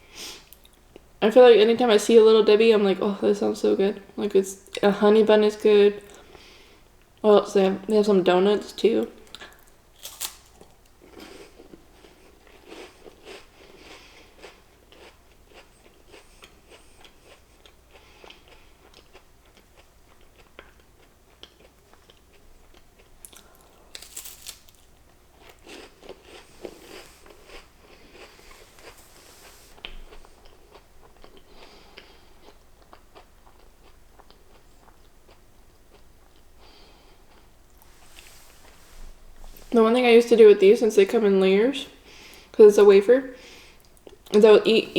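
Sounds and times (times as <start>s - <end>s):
person chewing crunchy snack: 9.3s - 36.4s.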